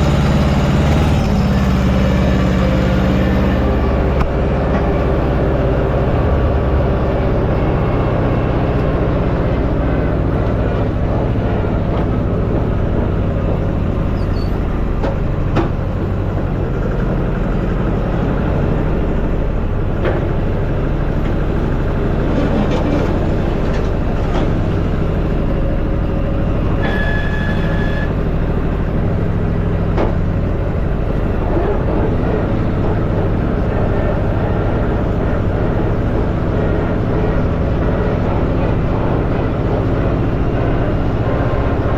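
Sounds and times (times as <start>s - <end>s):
vehicle engine running: 0.0s - 41.9s
brief high squeal: 14.2s - 14.6s, 26.8s - 28.1s.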